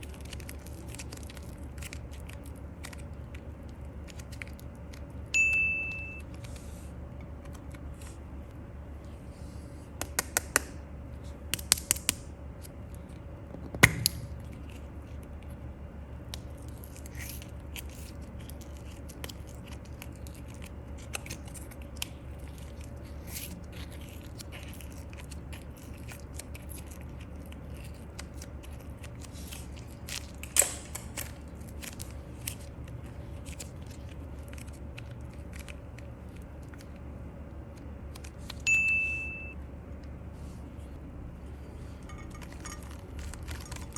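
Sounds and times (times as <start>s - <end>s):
small crackly clicks: 0.0s - 5.3s, 11.5s - 15.6s, 16.2s - 38.7s, 42.3s - 43.9s
short high beep: 5.4s - 6.2s, 38.7s - 39.6s.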